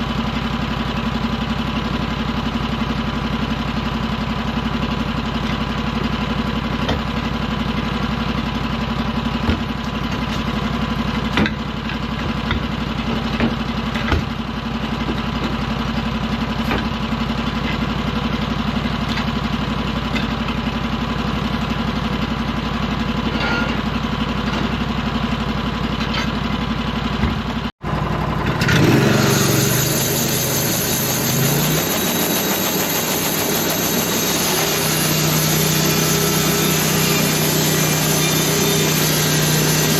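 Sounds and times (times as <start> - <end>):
sawmill engine running: 0.0 - 39.9
band blade whine: 28.1 - 39.9.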